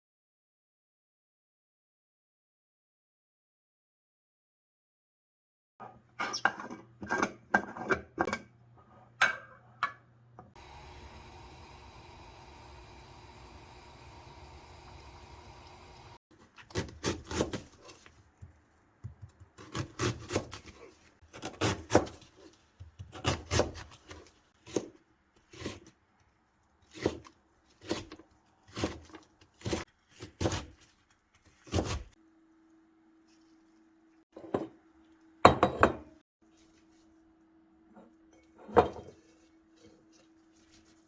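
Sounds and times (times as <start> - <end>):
blade cutting through radish: 16.6 - 18.1, 19.6 - 26.0, 26.8 - 32.2.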